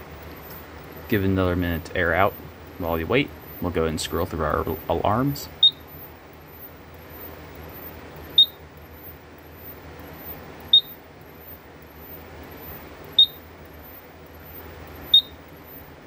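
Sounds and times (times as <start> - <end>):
keypad beeping: 5.6 - 15.9.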